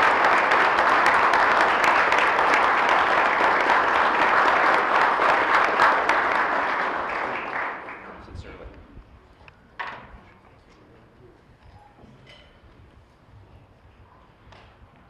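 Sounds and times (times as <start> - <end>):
audience applauding: 0.0 - 8.4.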